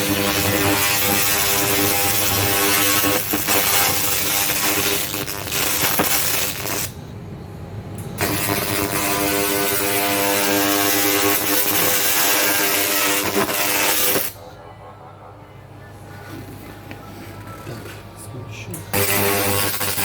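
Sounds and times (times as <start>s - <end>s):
laser cleaning machine hissing: 0.0s - 6.9s, 8.2s - 14.4s, 19.0s - 20.0s.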